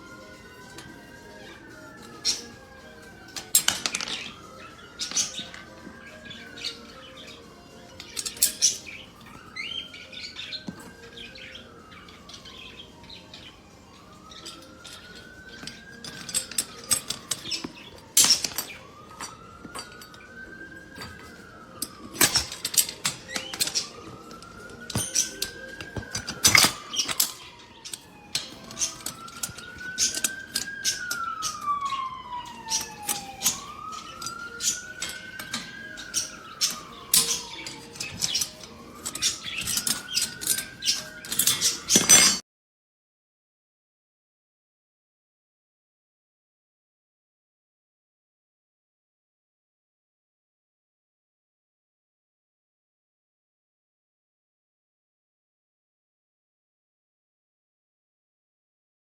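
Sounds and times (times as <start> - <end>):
siren-like wail: 0.0 - 42.4
bird chirping and squawking: 2.2 - 2.7, 4.0 - 13.6, 24.9 - 42.4.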